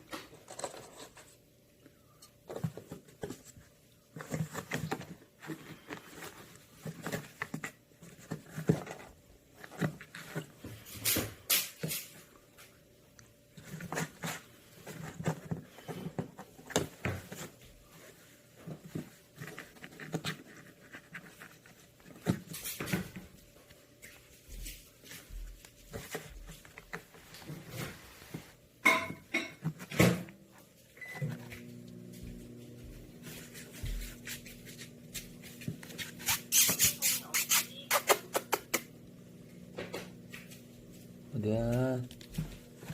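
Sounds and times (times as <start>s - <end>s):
low steady hum: 0.0s - 42.9s
paws scratching cardboard: 2.4s - 10.8s, 13.3s - 28.6s, 31.6s - 38.9s.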